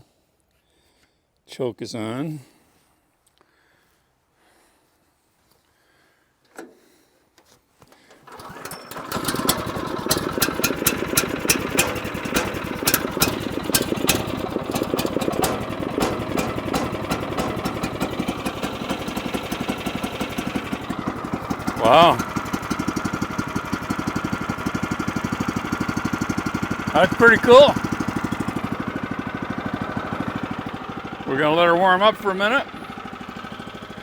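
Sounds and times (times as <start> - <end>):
small gasoline engine starting: 8.0 - 34.0.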